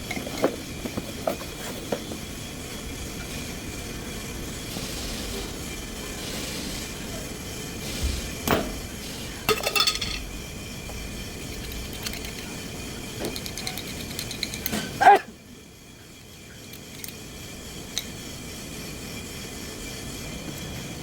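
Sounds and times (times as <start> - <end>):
steady background noise: 0.0 - 21.0
metal objects clinking: 9.5 - 10.4, 11.4 - 12.6, 13.2 - 15.0, 16.2 - 17.2.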